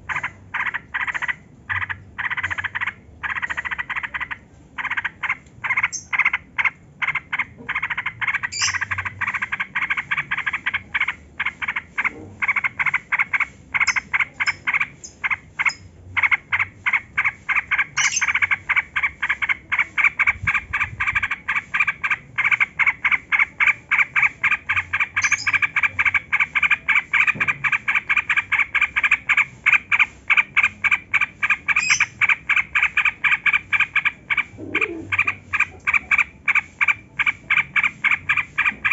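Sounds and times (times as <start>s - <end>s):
bird singing rapid chattering notes: 0.0s - 38.9s.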